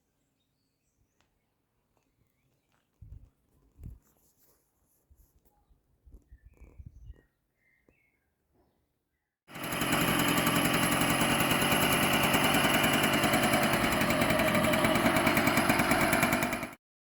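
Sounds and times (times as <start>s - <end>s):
two-stroke engine running: 9.5s - 16.8s.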